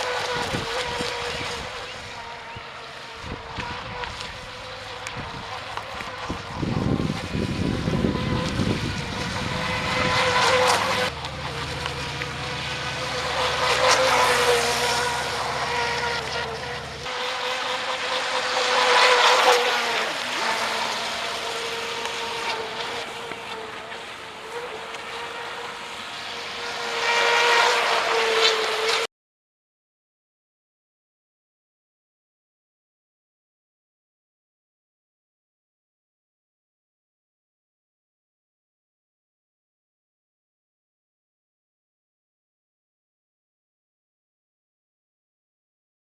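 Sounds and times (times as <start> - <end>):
electric boat motor whining: 0.0 - 29.1
water rushing: 0.0 - 29.1.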